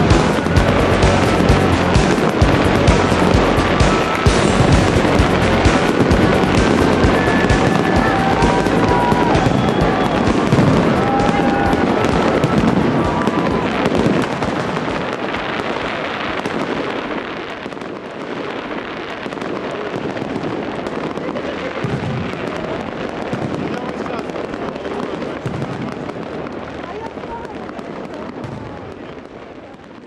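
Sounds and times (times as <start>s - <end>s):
music with held notes: 0.0s - 10.9s
fireworks crackling: 0.0s - 30.0s.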